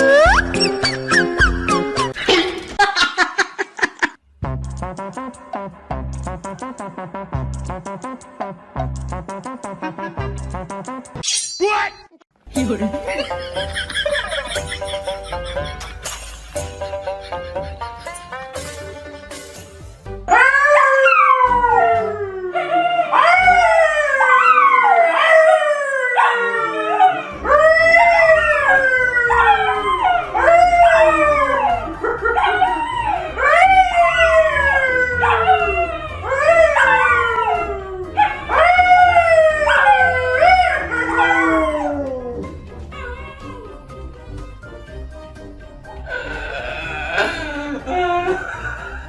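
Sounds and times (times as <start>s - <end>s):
animal howling: 20.3s - 43.9s, 46.0s - 49.0s.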